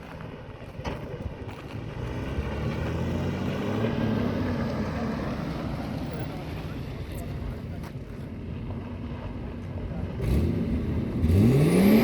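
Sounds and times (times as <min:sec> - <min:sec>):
road rumble: 0:00.0 - 0:12.0.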